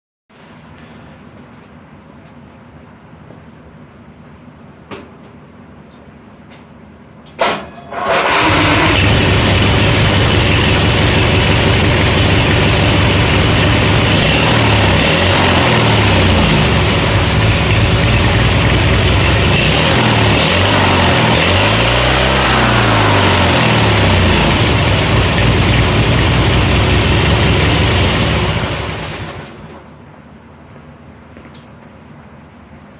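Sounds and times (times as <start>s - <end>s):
vehicle engine idling and revving: 8.1s - 29.8s.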